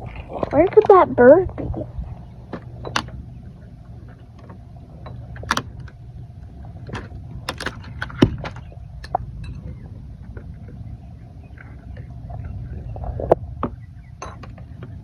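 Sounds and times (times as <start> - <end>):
steady low hum: 0.0 - 15.0
objects clicking and knocking: 2.6 - 3.2, 4.3 - 6.0, 6.9 - 9.7.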